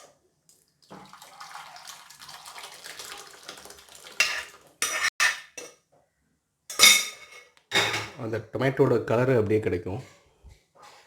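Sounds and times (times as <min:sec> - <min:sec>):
soup pouring into bowl: 0:00.9 - 0:04.8.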